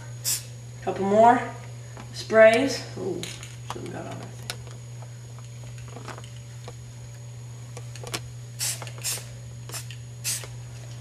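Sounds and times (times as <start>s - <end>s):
steady low hum: 0.0s - 11.0s
spray paint can hissing: 0.2s - 0.5s, 8.6s - 10.5s.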